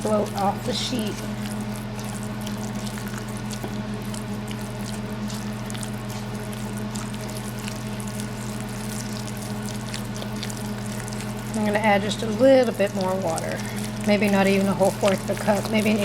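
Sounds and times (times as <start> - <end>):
spoon stirring wet batter: 0.0 - 16.0
steady low hum: 0.0 - 16.0
wet clicks and squelches: 0.9 - 16.0.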